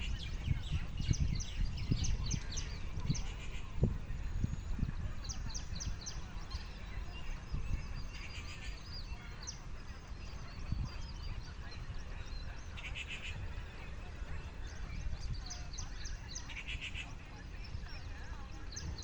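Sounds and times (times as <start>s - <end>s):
birds chirping: 0.0s - 19.0s.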